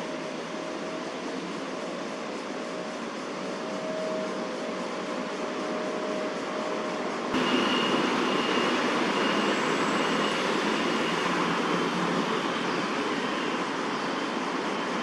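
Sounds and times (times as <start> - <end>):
distant traffic rush: 7.1 - 15.0
thin high tone: 7.4 - 14.3.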